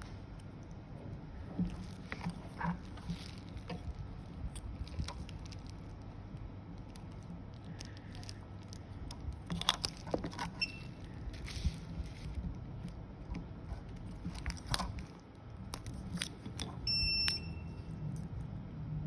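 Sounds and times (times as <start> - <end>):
steady low hum: 0.0 - 19.0
packaging rustling: 1.5 - 6.1, 6.8 - 16.9.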